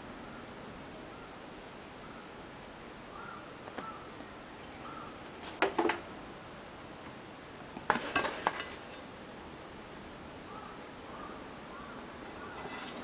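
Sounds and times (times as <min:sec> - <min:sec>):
kitchenware clinking: 0:07.9 - 0:09.0.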